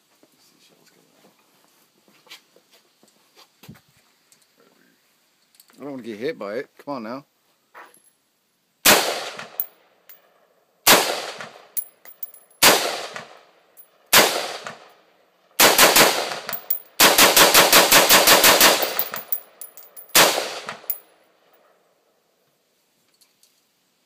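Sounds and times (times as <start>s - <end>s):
rifle shots: 8.9s - 9.7s, 10.9s - 11.6s, 12.6s - 13.3s, 14.1s - 14.8s, 15.6s - 19.4s, 20.1s - 21.0s.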